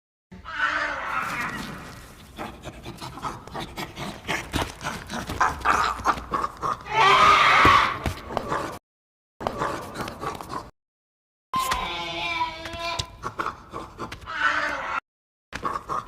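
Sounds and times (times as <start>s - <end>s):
creature pants and rough vocals: 1.5s - 7.0s, 9.4s - 10.7s, 13.2s - 14.3s, 15.6s - 16.0s.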